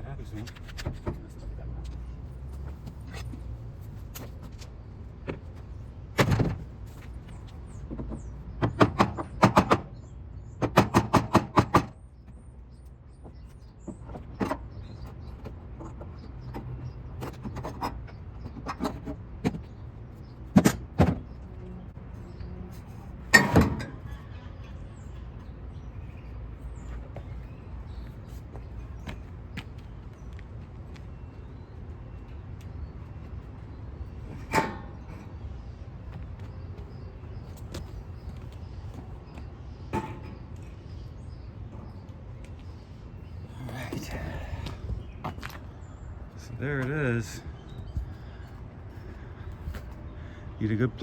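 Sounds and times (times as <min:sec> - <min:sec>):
steady low hum: 0:00.0 - 0:08.3
sharp knocks and clanks: 0:07.9 - 0:10.0, 0:10.6 - 0:12.0, 0:23.3 - 0:24.2, 0:39.9 - 0:40.8.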